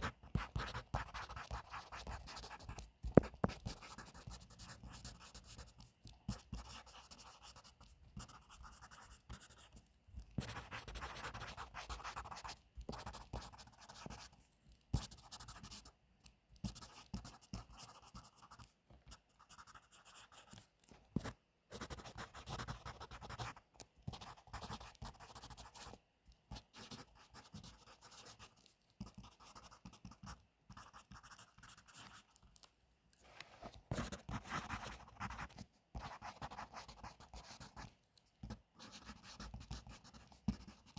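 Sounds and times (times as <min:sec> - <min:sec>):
pencil writing on paper: 0:00.0 - 0:16.0, 0:16.6 - 0:32.7, 0:33.8 - 0:40.9.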